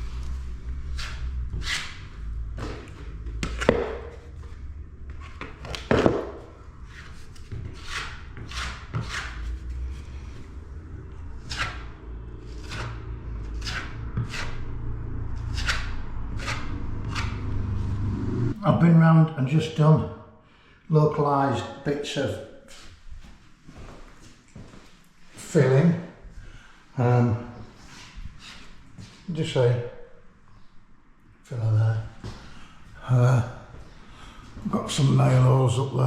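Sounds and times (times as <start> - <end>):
low steady hum: 0.0 - 19.6.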